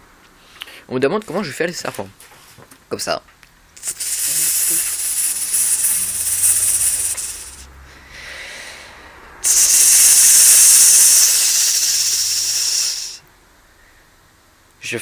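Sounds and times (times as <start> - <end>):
man imitating snake hiss: 3.8 - 13.2.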